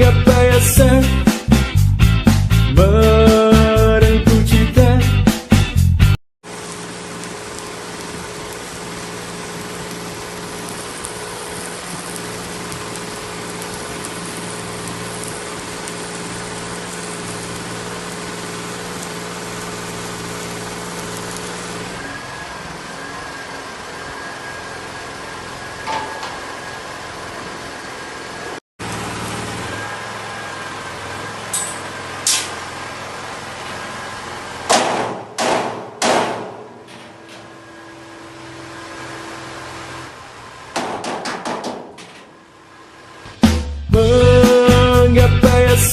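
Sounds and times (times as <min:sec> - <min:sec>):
machine hum: 0:06.5 - 0:45.9
loud ringing metal knocks: 0:25.8 - 0:26.4, 0:34.7 - 0:37.6, 0:40.8 - 0:42.3.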